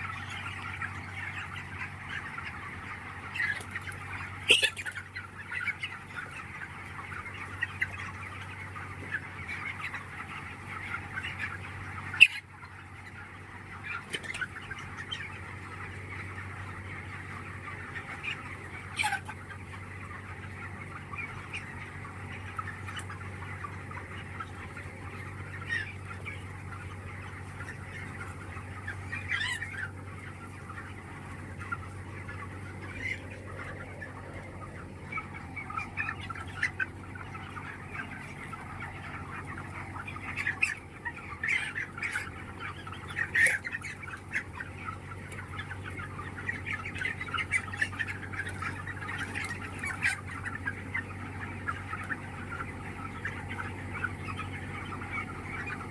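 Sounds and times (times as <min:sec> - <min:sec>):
chicken squawks: 0:00.0 - 0:55.9
chickens clucking: 0:00.0 - 0:55.9.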